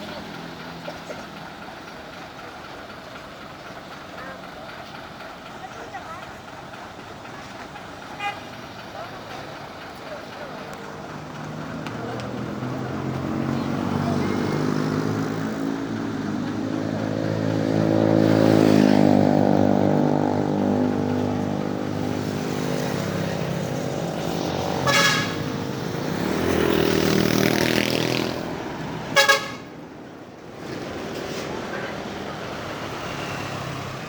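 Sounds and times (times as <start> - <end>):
truck engine passing: 0.0 - 34.0
vehicle horn toots: 8.2 - 8.5, 24.8 - 25.6, 29.1 - 29.7.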